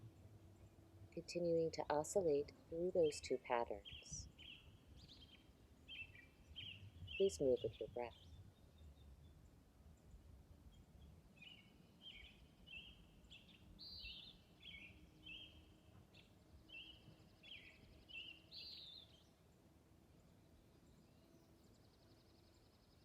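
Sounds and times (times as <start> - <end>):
outdoor background hiss: 0.0 - 23.0
bird chirping: 1.5 - 19.4.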